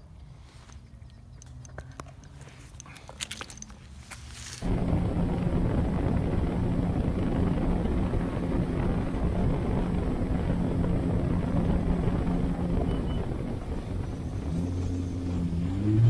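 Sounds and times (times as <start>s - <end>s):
motor running: 4.6s - 16.0s.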